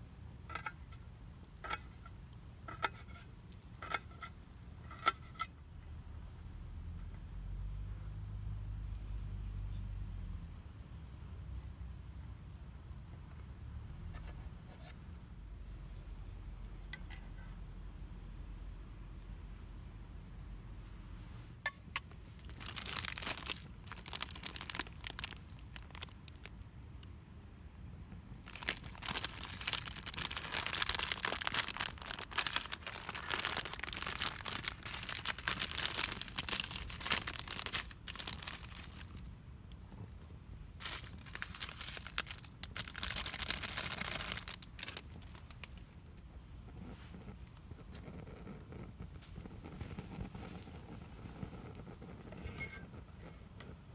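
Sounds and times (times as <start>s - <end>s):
crinkling and rustling: 22.0s - 27.1s, 28.1s - 53.9s.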